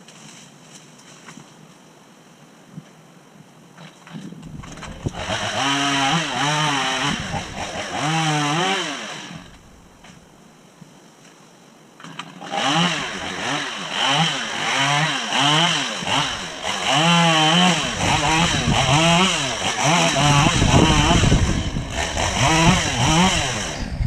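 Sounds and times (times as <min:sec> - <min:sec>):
chainsaw revving: 0:04.4 - 0:09.7, 0:12.1 - 0:24.0.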